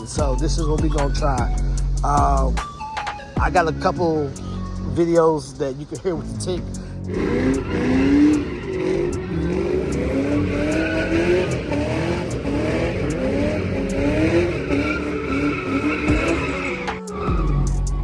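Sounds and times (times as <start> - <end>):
car engine revving: 1.4 - 18.0
exhaust tick: 5.2 - 17.9.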